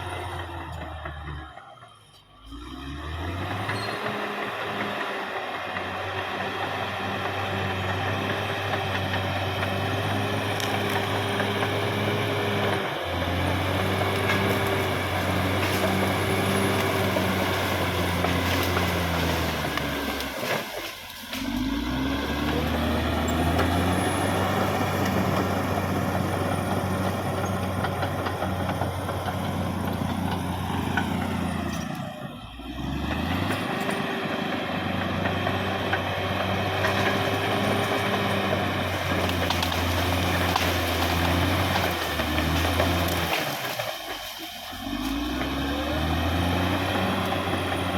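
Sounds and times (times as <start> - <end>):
bulldozer diesel engine running: 0.0 - 47.9.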